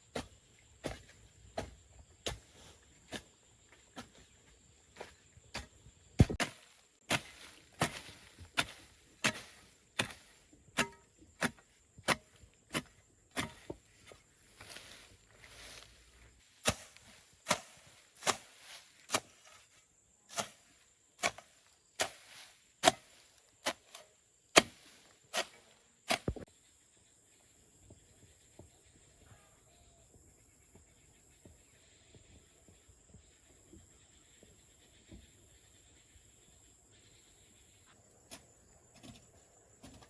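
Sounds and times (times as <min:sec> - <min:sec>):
blade chopping wood: 0:05.6 - 0:13.8, 0:16.6 - 0:19.6, 0:21.2 - 0:26.4.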